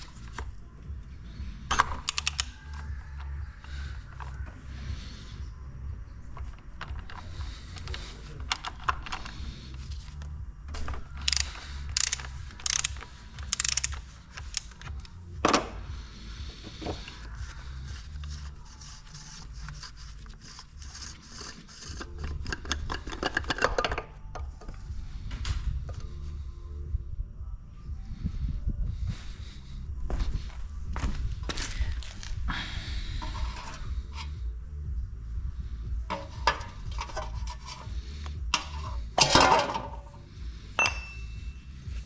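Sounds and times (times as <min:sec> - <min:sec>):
steady low hum: 0:00.0 - 0:42.0
ratchet clicking: 0:02.0 - 0:02.5, 0:11.2 - 0:15.1.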